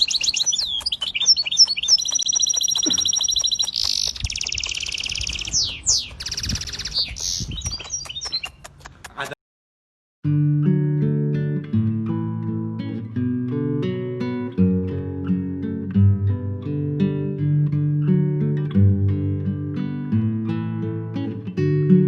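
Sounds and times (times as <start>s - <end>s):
bird singing in high chirps: 0.0s - 8.8s
strummed acoustic guitar music: 10.3s - 22.0s.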